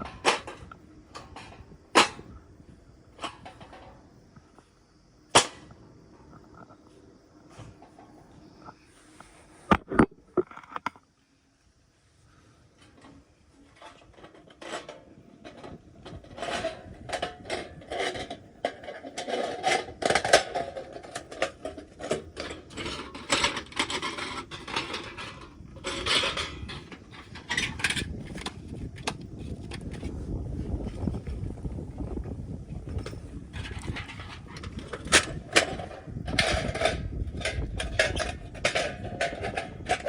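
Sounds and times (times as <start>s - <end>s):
metal and wood clinking: 12.8s - 30.1s, 32.9s - 40.0s.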